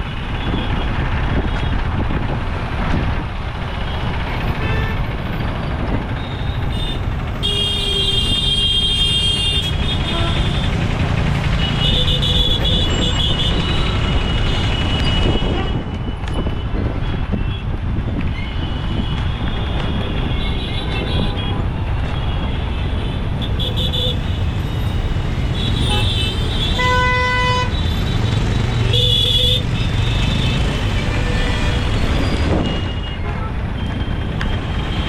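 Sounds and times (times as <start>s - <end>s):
rumble of passing vehicles: 0.0s - 35.0s
wind: 0.0s - 35.0s
vehicle horns honking: 6.4s - 10.8s, 11.6s - 15.9s, 22.4s - 24.5s, 25.5s - 28.0s, 28.8s - 34.1s.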